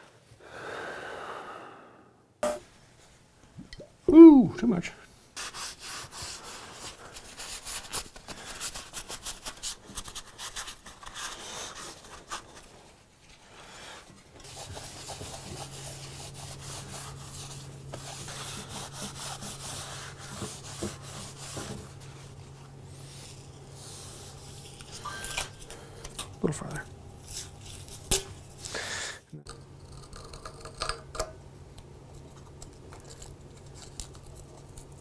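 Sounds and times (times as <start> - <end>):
hand rubbing strokes: 5.2 - 28.8
steady low hum: 11.6 - 30.1.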